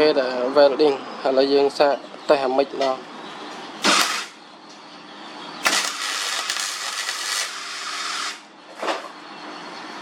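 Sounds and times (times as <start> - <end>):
electric welding arc crackling: 3.8 - 4.4, 5.6 - 8.5.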